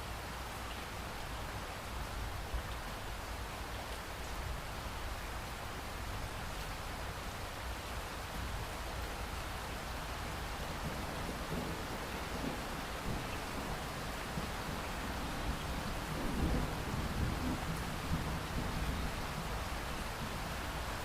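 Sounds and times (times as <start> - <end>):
steady rain: 0.0 - 21.0
low rumble of thunder: 10.6 - 21.0.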